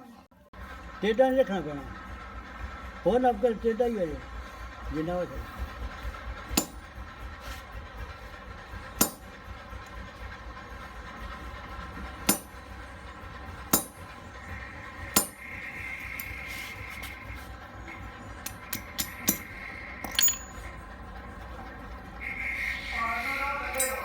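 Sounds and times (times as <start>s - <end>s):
hammer striking metal: 6.4s - 7.6s, 8.8s - 10.0s, 12.0s - 12.9s, 13.5s - 17.1s, 17.9s - 20.7s, 23.7s - 24.0s.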